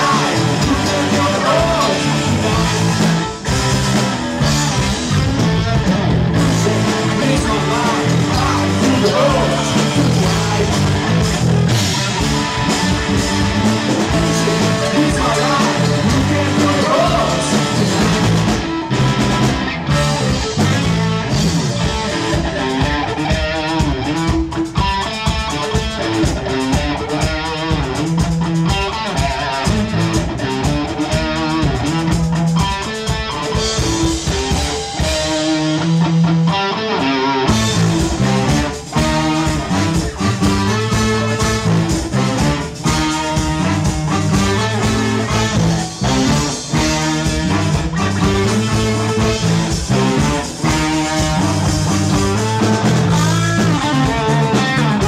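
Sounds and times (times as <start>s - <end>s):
person singing: 0.0s - 3.3s, 6.4s - 11.3s, 14.0s - 18.4s
rock music with guitar: 0.0s - 55.0s.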